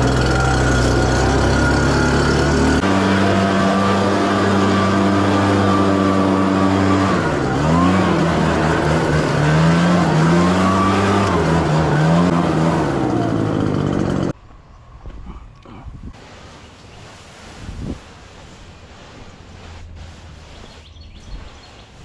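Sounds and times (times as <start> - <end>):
small gasoline engine running: 0.0 - 14.4.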